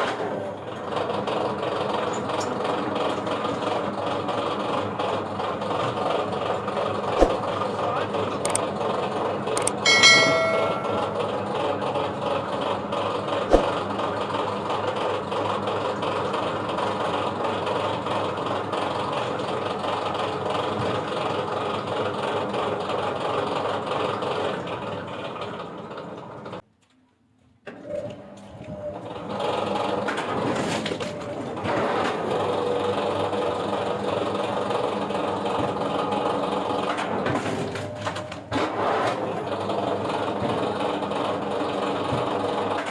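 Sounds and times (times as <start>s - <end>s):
machinery clatter: 5.0s - 8.6s.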